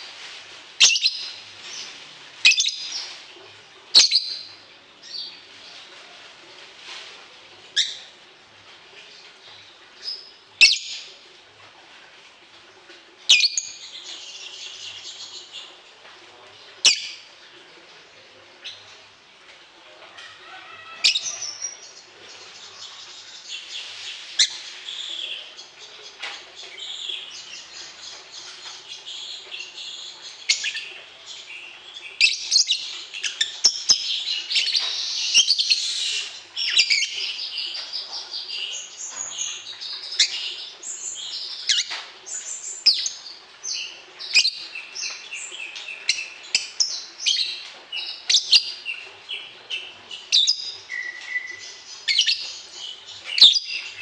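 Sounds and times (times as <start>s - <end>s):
songbird chirps and trills: 12.7s - 54.0s.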